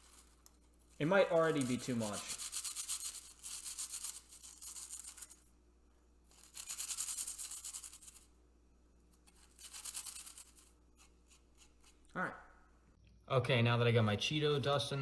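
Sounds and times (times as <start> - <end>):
scratchy rubbing strokes: 0.0 - 5.5, 6.2 - 8.4, 9.0 - 12.2.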